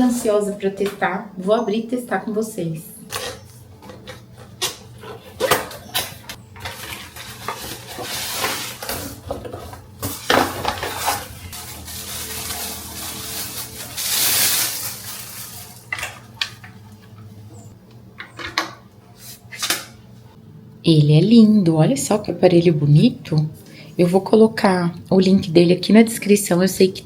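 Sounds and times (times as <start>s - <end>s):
packaging rustling: 5.1s - 9.2s, 10.0s - 16.6s.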